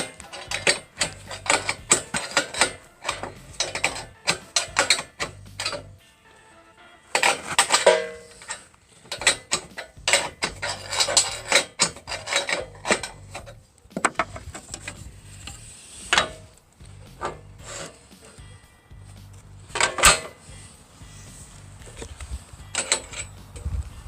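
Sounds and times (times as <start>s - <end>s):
sharp clicks and knocks: 0.0s - 5.9s, 7.2s - 18.4s.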